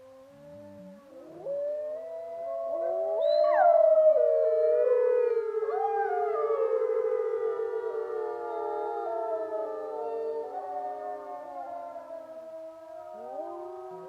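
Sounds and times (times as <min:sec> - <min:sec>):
wolves howling: 0:00.0 - 0:14.0.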